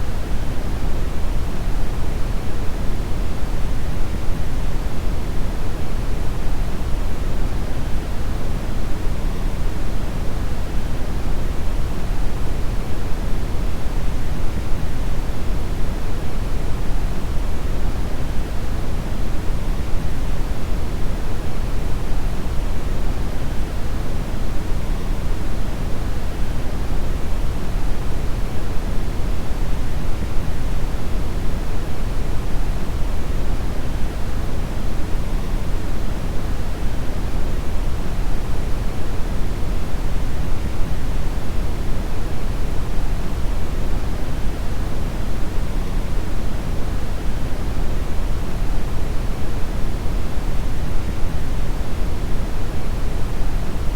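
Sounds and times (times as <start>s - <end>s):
brown noise hiss: 0.0s - 53.9s.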